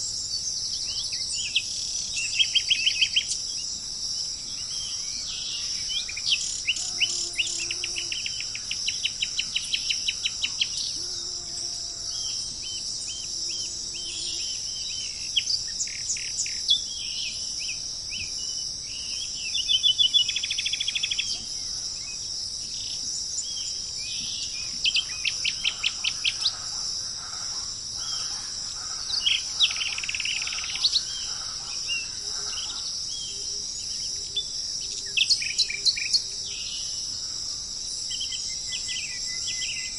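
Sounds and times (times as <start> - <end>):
birds calling and trilling: 0.0 - 11.3, 12.1 - 37.3
insects droning: 0.0 - 39.9.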